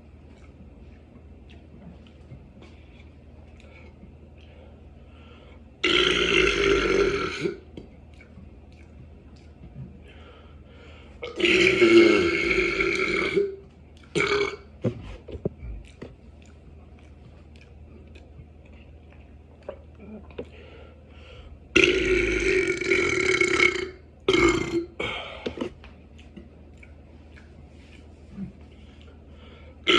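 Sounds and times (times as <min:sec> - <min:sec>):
person burping: 0:05.8 - 0:07.6, 0:11.2 - 0:13.6, 0:14.2 - 0:14.7, 0:21.8 - 0:25.7.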